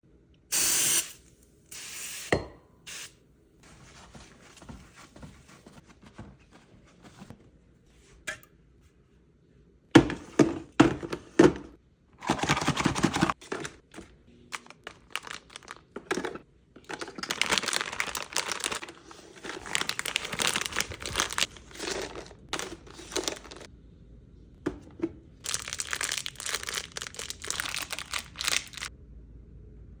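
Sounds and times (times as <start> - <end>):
plastic packaging crinkling and tearing: 12.2 - 23.7, 25.4 - 28.9.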